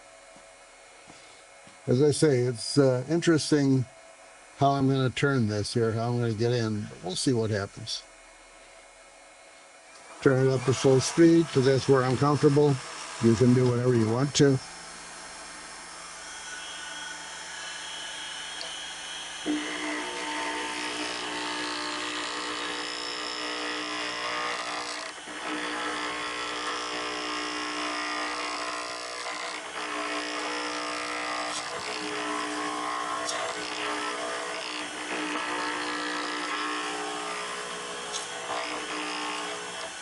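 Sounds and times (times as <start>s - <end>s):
lathe motor hum: 10.0s - 40.0s
turning tool scraping wood: 19.5s - 40.0s.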